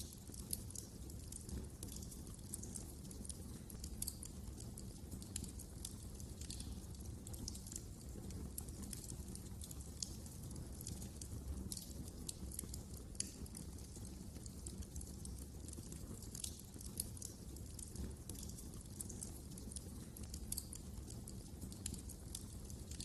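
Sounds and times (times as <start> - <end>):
fire crackling and popping: 0.0 - 23.0
low noise of flames: 0.0 - 23.0.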